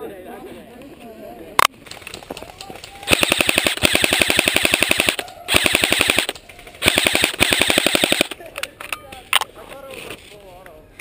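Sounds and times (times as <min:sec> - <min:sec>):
airsoft gun firing full auto: 0:03.0 - 0:08.4.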